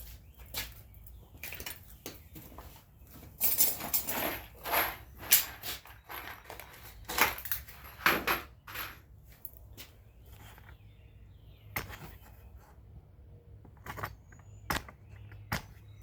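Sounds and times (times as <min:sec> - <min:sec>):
tools clattering and rustling: 0:00.0 - 0:10.8.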